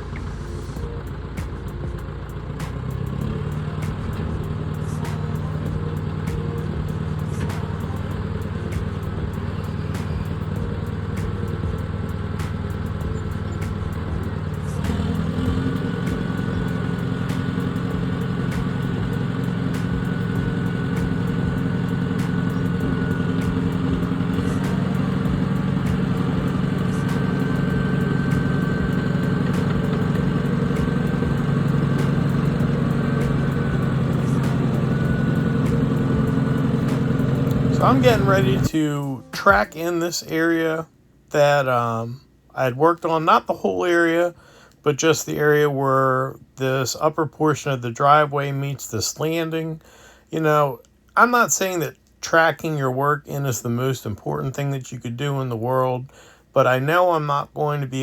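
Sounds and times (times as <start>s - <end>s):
heavy diesel engine running: 0.0s - 39.7s
thin whine: 0.0s - 42.2s.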